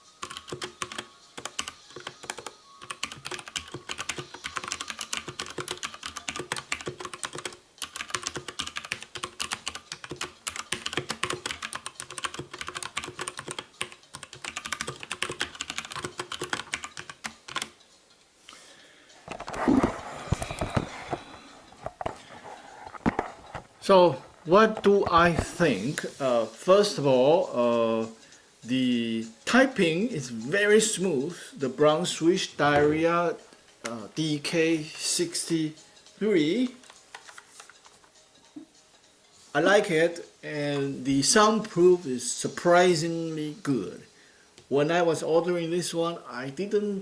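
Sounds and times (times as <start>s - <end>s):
fast mechanical keyboard typing: 0.2s - 17.8s.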